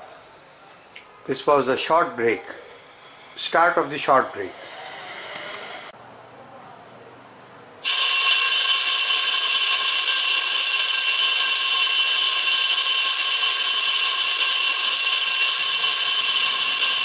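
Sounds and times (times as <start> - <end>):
electric school bell ringing: 7.8 - 17.0.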